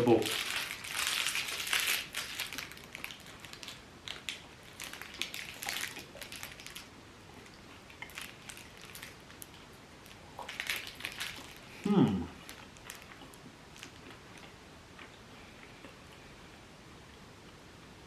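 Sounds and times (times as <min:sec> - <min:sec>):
plastic wrapper crinkling: 0:00.0 - 0:14.2.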